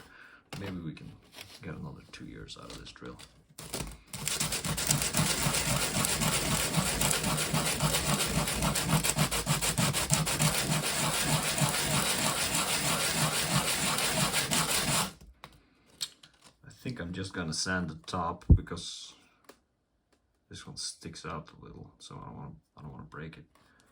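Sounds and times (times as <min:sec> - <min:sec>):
plastic part rubbed on sandpaper: 0:04.2 - 0:15.2.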